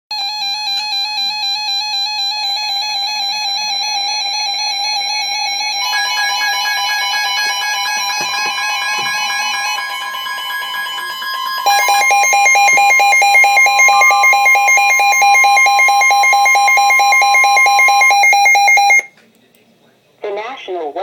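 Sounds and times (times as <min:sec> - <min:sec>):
electronic synthesizer music: 0:03.2 - 0:19.1.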